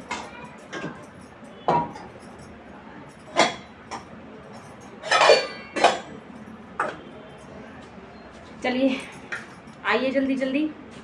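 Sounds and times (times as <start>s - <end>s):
dishes and utensils clinking: 0.0s - 7.9s.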